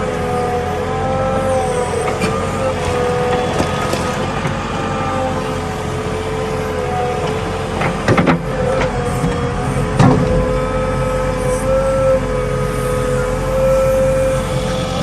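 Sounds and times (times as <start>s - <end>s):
diesel engine whining under work: 0.0s - 15.0s
clatter of knocks: 10.0s - 10.7s.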